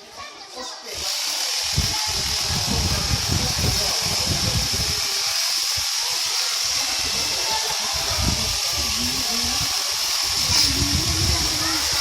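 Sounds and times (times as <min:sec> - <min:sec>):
electric shears buzzing: 0:00.8 - 0:12.0.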